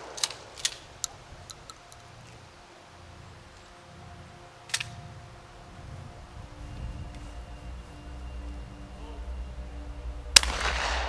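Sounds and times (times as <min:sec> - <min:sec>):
shotgun shot echo: 0:10.4 - 0:11.0.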